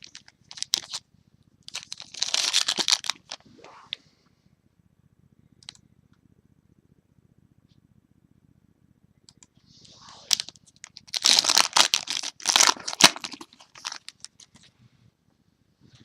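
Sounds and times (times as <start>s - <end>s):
wrapper crinkling and tearing: 0.0s - 1.0s, 1.7s - 3.4s, 10.2s - 14.6s
faint low hum: 0.0s - 16.0s.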